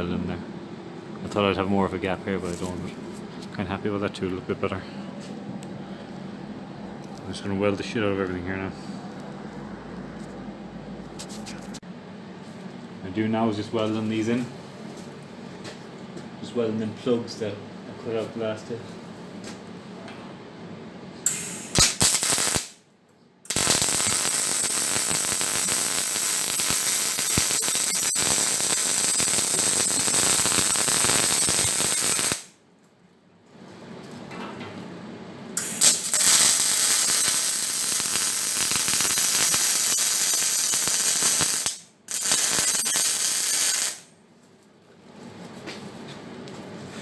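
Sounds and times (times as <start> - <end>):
arc welding: 2.4 - 2.8, 21.2 - 22.8, 23.5 - 32.6, 35.6 - 44.2.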